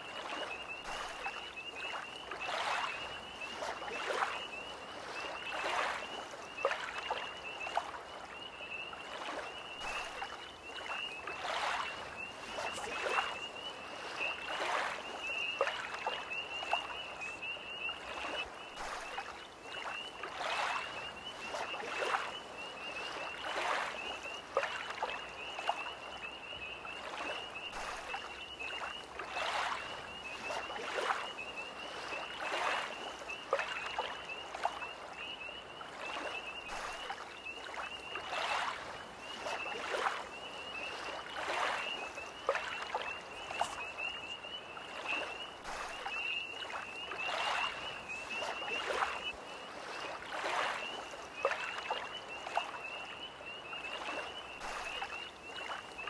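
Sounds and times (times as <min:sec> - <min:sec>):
waves lapping at shore: 0:00.0 - 0:56.0.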